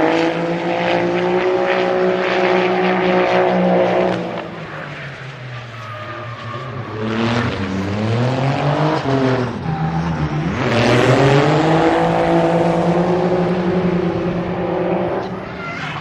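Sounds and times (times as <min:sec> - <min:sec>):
car engine revving hard: 0:00.0 - 0:04.8, 0:06.9 - 0:15.6
tyre squeal and skidding: 0:04.5 - 0:07.9, 0:08.9 - 0:10.6, 0:15.2 - 0:16.0.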